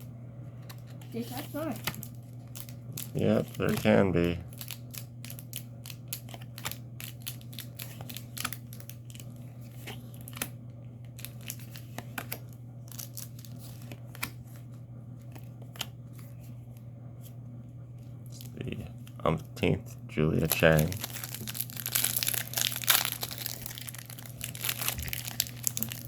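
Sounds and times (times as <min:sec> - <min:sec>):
steady low hum: 0:00.0 - 0:26.0
cards and wrappers clicking: 0:01.3 - 0:10.5, 0:20.4 - 0:26.0.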